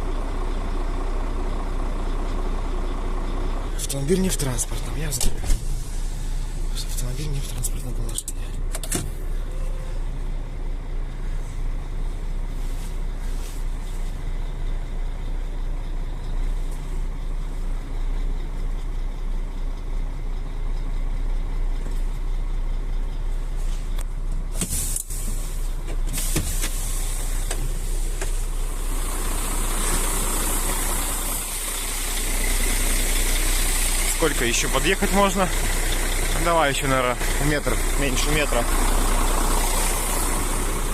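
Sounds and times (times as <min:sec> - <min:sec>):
truck diesel engine running: 0:00.0 - 0:40.9
air hiss: 0:24.6 - 0:28.4.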